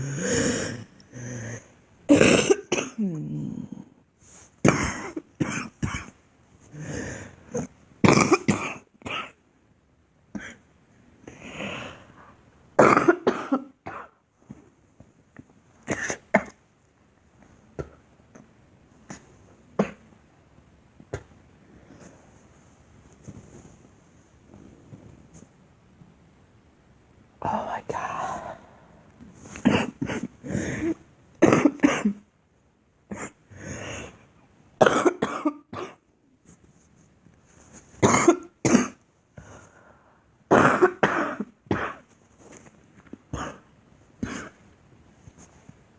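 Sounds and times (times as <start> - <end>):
girl coughing: 2.1 - 3.2, 4.6 - 6.2, 12.8 - 14.2, 29.6 - 30.8, 31.4 - 32.2, 34.8 - 36.0, 38.0 - 39.0, 40.5 - 42.0
breaths: 27.5 - 29.4, 39.4 - 40.4.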